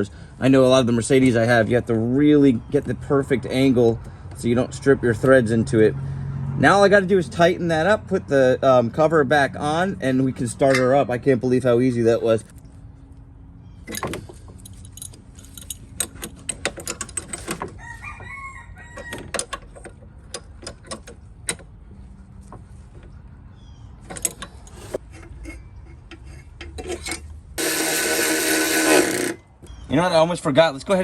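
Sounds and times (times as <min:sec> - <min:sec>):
hand tools clicking and clattering: 0:13.9 - 0:17.8, 0:19.0 - 0:21.7, 0:24.0 - 0:29.8.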